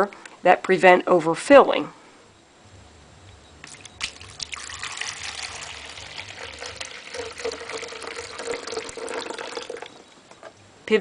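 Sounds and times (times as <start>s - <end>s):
water trickling pour: 3.7s - 10.1s.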